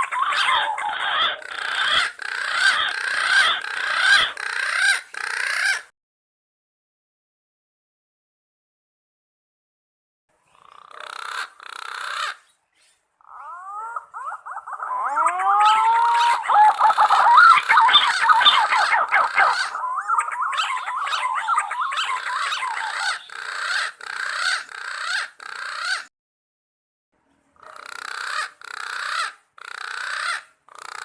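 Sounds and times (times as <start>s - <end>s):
pigeons whistling calls: 0.0s - 5.8s, 12.0s - 26.0s.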